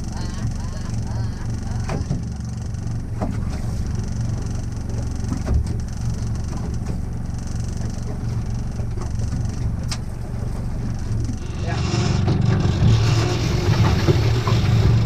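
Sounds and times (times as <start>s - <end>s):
boat engine droning: 0.0s - 15.0s
knocks on hull: 5.0s - 5.9s.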